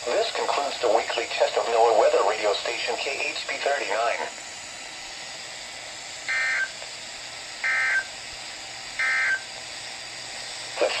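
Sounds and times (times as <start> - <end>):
radio hiss: 0.0 - 11.0
digital data tone bursts: 6.3 - 6.7, 7.6 - 8.1, 9.0 - 9.5.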